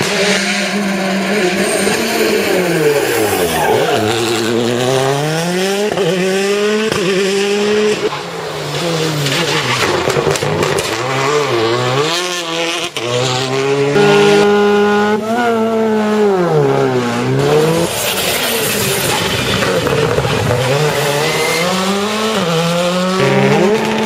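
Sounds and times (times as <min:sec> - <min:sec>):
rally car engine revving: 0:00.0 - 0:24.0
tyre squeal: 0:00.6 - 0:04.6, 0:17.0 - 0:22.0.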